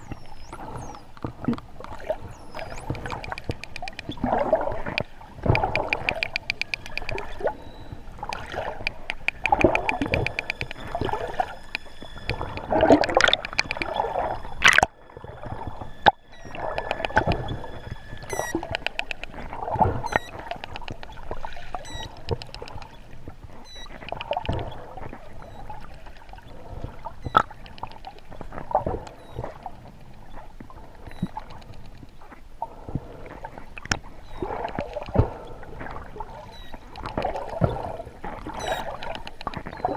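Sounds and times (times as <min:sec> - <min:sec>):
dolphin whistles and chirps: 0:00.0 - 0:01.1, 0:02.2 - 0:04.2, 0:15.6 - 0:19.2, 0:20.0 - 0:20.4, 0:21.8 - 0:22.2, 0:38.6 - 0:39.9
dolphin clicks and buzzes: 0:00.0 - 0:39.9
water rushing and gurgling: 0:00.0 - 0:39.9.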